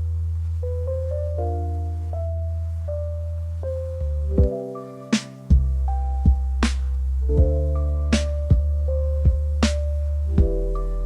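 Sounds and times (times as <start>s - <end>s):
chill-out music: 0.0s - 11.0s
sharp snare hit: 5.2s - 5.6s, 6.6s - 7.0s, 8.2s - 8.5s, 9.6s - 9.9s.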